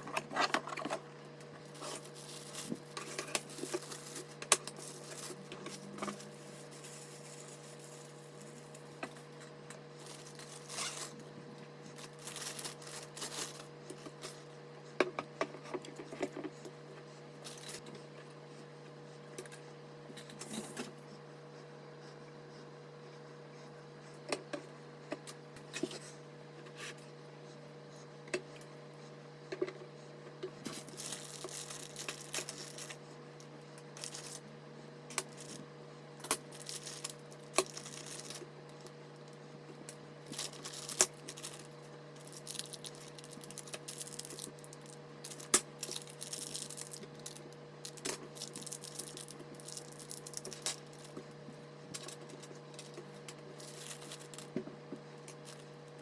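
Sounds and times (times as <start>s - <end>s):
steady low hum: 0.0s - 56.0s
plastic or paper wrapping rustling: 1.6s - 8.9s, 10.0s - 11.2s, 11.9s - 13.7s, 30.7s - 33.0s, 34.0s - 34.4s, 36.4s - 38.5s, 40.2s - 51.2s, 52.0s - 54.6s.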